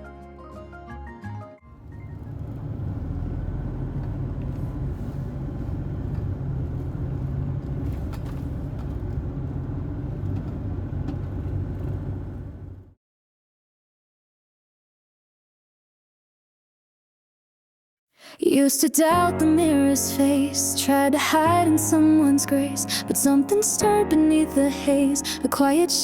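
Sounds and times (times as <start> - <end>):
car engine rumble: 1.6 - 13.0
road noise: 1.6 - 13.0.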